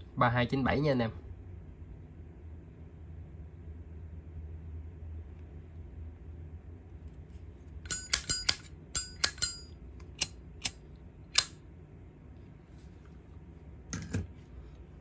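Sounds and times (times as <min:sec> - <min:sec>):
metal lighter clicks and clinks: 0:07.9 - 0:10.8.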